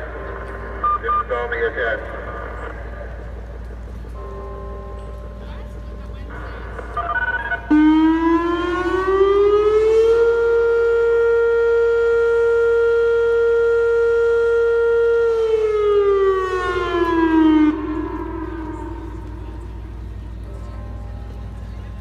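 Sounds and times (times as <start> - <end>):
warning siren wail: 6.4 - 20.8.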